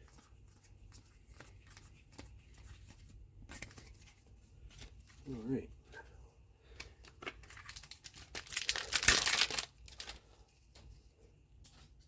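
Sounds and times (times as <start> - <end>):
trading cards clicking and rustling: 6.8 - 10.2.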